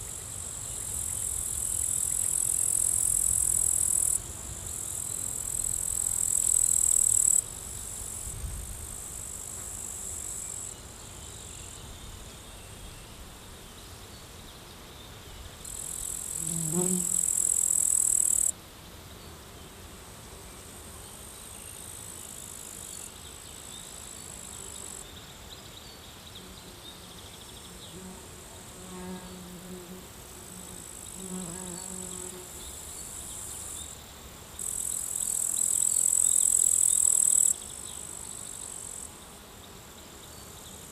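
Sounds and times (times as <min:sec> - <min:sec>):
insects chirring: 0:00.0 - 0:11.6, 0:15.6 - 0:18.5, 0:28.7 - 0:39.4
bee buzzing: 0:15.8 - 0:18.5, 0:27.6 - 0:33.3.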